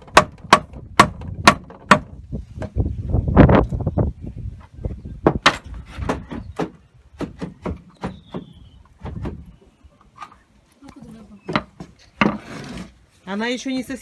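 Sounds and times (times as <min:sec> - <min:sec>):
knocks and bangs on wood: 0:00.0 - 0:02.8, 0:05.2 - 0:09.5, 0:11.5 - 0:12.4.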